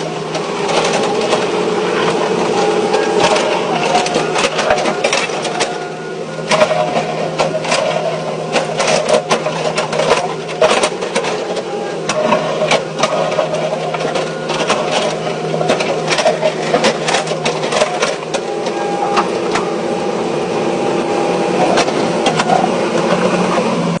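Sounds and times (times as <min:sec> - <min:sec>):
diesel engine under load: 0:00.0 - 0:24.0.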